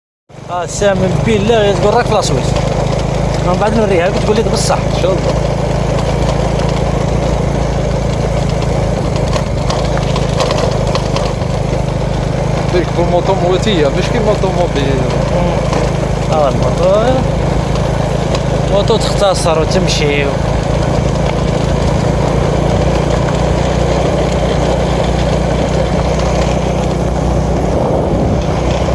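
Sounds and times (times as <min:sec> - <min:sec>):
motorcycle engine running: 0:00.3 - 0:28.9
wind rush: 0:22.0 - 0:28.9.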